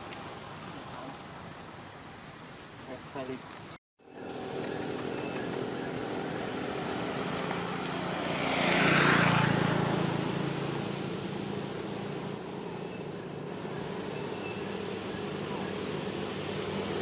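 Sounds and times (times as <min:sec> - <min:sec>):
high insect drone: 0:00.0 - 0:17.0
motor vehicle passing by: 0:04.1 - 0:17.0.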